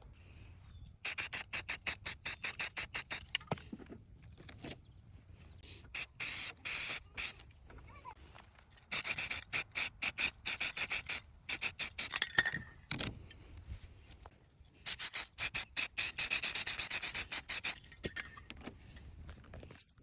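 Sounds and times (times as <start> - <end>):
spray can shaken with rattling ball: 1.0 - 3.4, 5.9 - 7.4, 8.7 - 12.8, 14.8 - 18.5.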